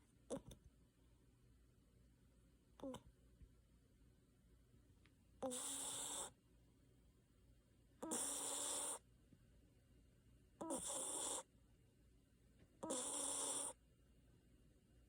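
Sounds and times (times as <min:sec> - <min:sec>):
dog snoring: 0:05.4 - 0:06.4, 0:08.0 - 0:09.0, 0:10.6 - 0:11.5, 0:12.8 - 0:13.8.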